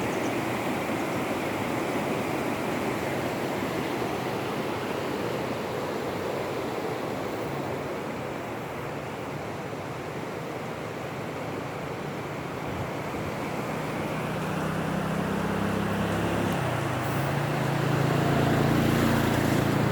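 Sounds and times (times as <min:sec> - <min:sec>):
rushing water: 0:00.0 - 0:19.9
low engine hum: 0:11.8 - 0:19.9.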